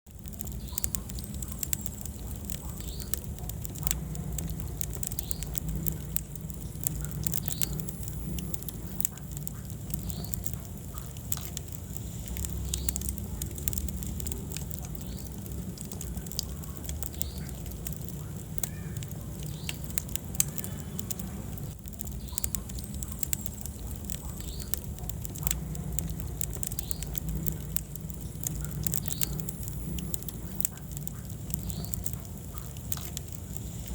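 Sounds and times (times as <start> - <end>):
wood fire crackling and popping: 0.0 - 33.9.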